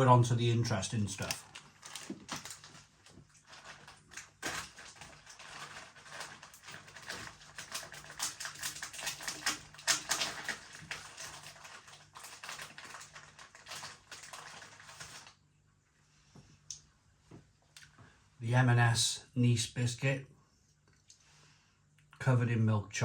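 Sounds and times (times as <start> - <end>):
wrapper crackling and rustling: 0.7 - 15.4.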